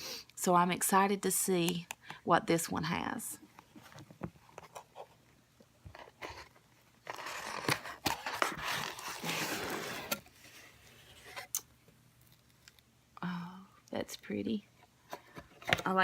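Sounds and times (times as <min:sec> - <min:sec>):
cardboard rustling and crinkling: 0:05.9 - 0:11.6.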